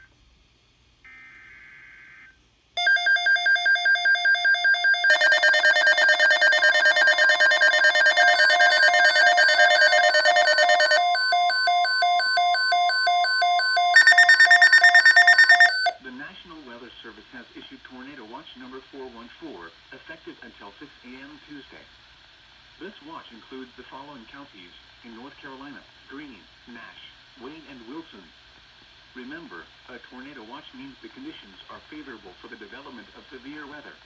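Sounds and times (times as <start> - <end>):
loud electronic beeping: 2.8 - 16.0.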